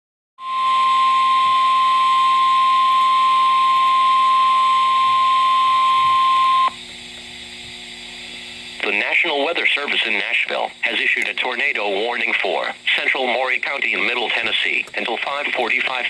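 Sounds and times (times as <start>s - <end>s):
steady alarm tone: 0.4s - 6.8s
radio hiss: 8.3s - 16.0s.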